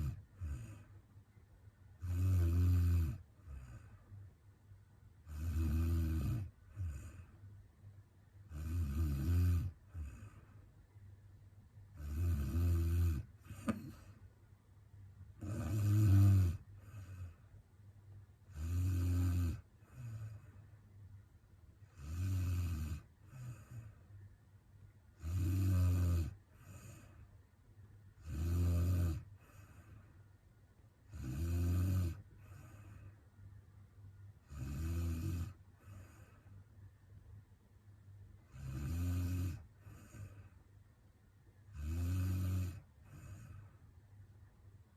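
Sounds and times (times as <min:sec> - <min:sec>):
woman snoring: 0:00.0 - 0:00.9, 0:02.0 - 0:04.0, 0:05.2 - 0:07.3, 0:08.5 - 0:10.4, 0:12.0 - 0:14.1, 0:15.4 - 0:17.4, 0:18.5 - 0:20.5, 0:21.9 - 0:23.9, 0:25.2 - 0:27.2, 0:28.2 - 0:30.0, 0:31.1 - 0:33.0, 0:34.4 - 0:36.4, 0:38.5 - 0:40.5, 0:41.7 - 0:43.7.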